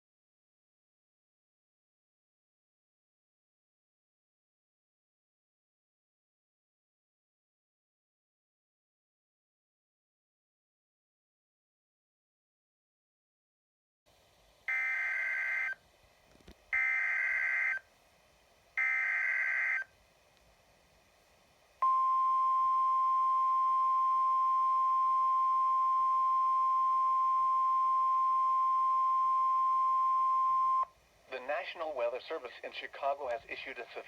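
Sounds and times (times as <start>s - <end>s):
single-tone warning alarm: 14.7s - 15.8s, 16.8s - 17.8s, 18.8s - 19.9s.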